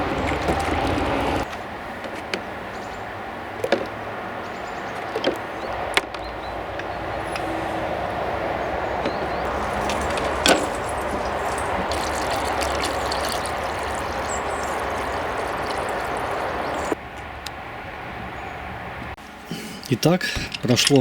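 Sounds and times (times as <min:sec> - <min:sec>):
electric kettle boiling: 0:09.5 - 0:17.0.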